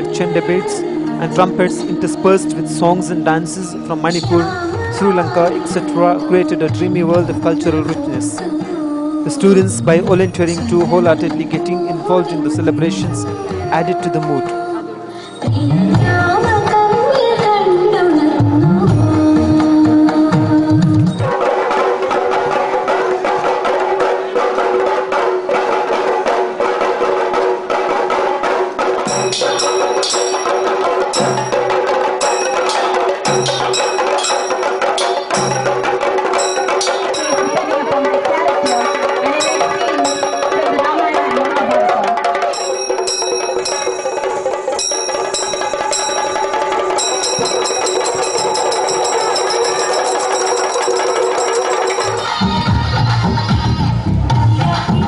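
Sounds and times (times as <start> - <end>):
fast stick drumming: 21.4 - 52.4
bright metallic ringing: 29.1 - 41.2, 42.5 - 52.2
metal bell struck: 29.1 - 41.2, 42.5 - 52.2
steady held tone: 29.1 - 52.2.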